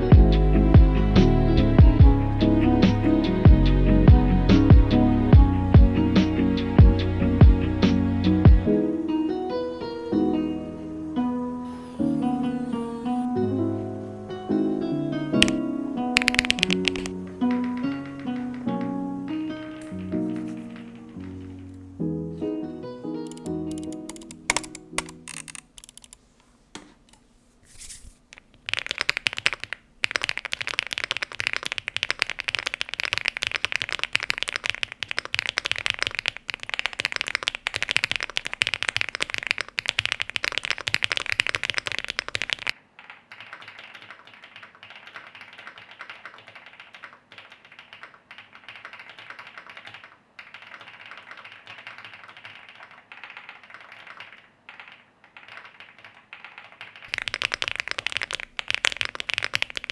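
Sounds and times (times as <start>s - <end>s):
fast typing on mechanical keyboard: 15.4s - 15.6s, 16.2s - 18.9s, 23.3s - 26.2s, 28.3s - 59.9s.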